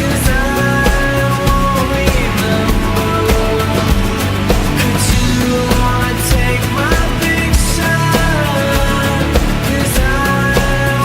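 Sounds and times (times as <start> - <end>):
rock music with drums and guitar: 0.0 - 11.0.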